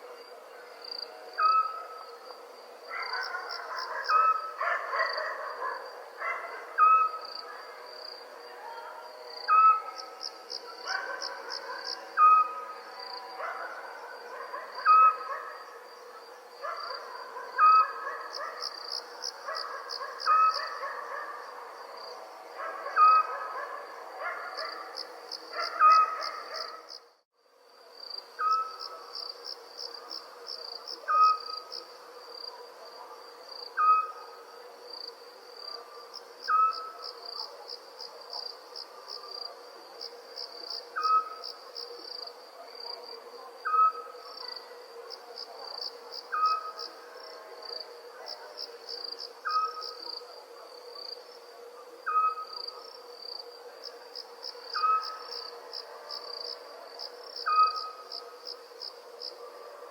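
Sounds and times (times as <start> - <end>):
crickets chirping: 0.0 - 59.9
owl calling: 3.1 - 4.6, 6.8 - 7.2, 9.5 - 10.0, 14.8 - 15.5, 28.4 - 29.0, 31.1 - 31.6, 33.8 - 34.3, 36.5 - 37.0, 41.0 - 41.4, 46.3 - 46.8, 49.4 - 49.9, 52.0 - 52.5, 54.8 - 55.3.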